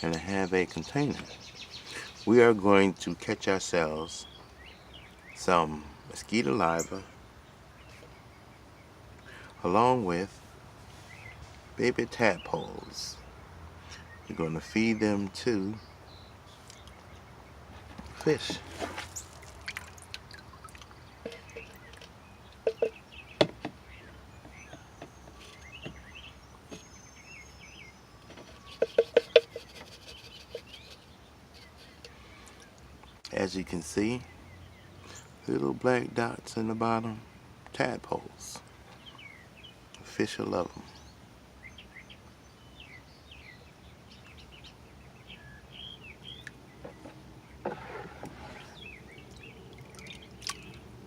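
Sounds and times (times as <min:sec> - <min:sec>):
birds chirping: 0:00.0 - 0:51.0
faint bird chirps: 0:20.4 - 0:33.2
plastic knocks and clicks: 0:21.2 - 0:26.0.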